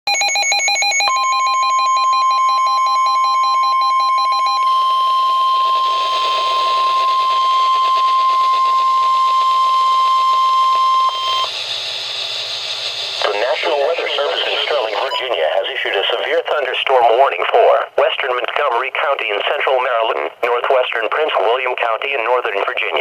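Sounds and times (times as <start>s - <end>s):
warbling digital data tones: 1.1s - 16.6s
radio hiss: 11.1s - 23.0s
steady alert tone: 13.2s - 15.6s.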